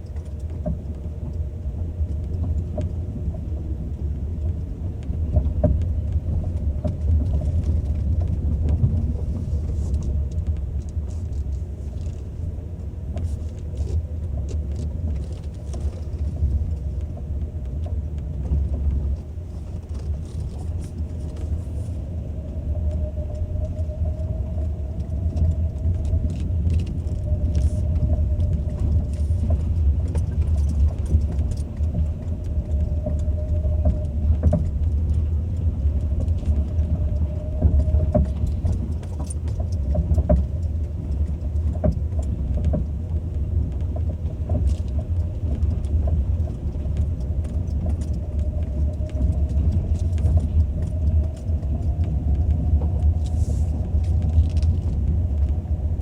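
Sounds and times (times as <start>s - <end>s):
road rumble: 0.0s - 56.0s.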